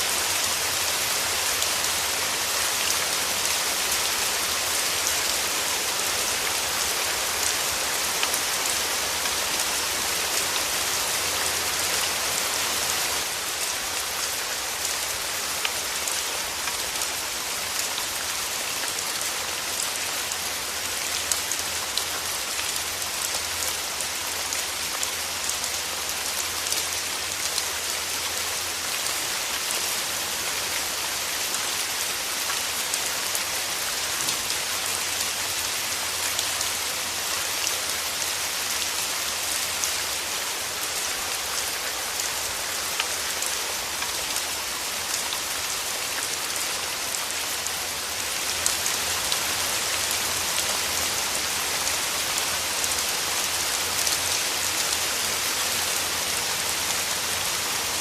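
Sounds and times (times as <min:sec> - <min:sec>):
steady rain falling: 0:00.0 - 0:58.0.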